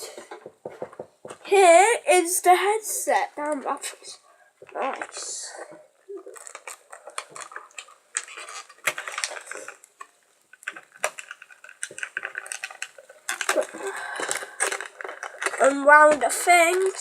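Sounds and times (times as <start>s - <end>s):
hard plastic clicking and clattering: 0.1s - 1.5s, 6.4s - 17.0s.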